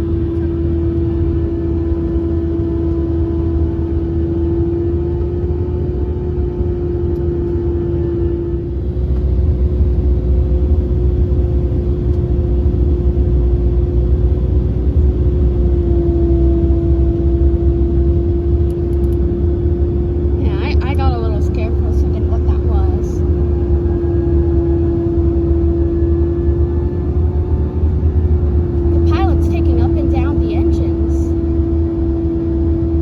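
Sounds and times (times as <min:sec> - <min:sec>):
aircraft cabin engine rumble: 0:00.0 - 0:33.0
steady hum-like tone: 0:19.7 - 0:32.8.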